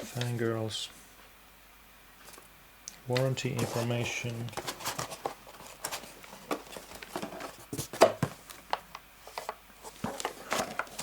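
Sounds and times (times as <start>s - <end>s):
cardboard and paper rustling: 3.1s - 11.0s.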